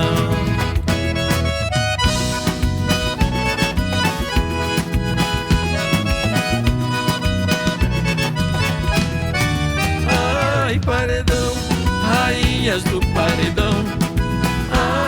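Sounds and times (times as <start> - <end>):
accordion melody: 0.0 - 15.0
bass: 0.0 - 15.0
driving drum beat: 0.0 - 15.0.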